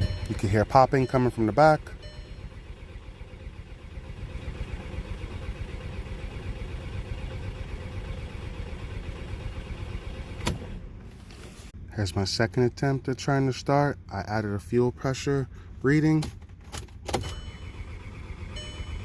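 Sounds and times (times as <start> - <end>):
engine cranking by starter: 16.4 - 19.0.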